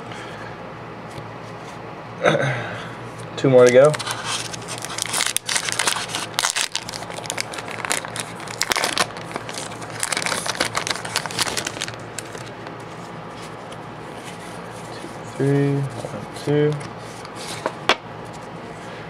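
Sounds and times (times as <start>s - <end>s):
foil wrapper crinkling: 3.6s - 12.7s.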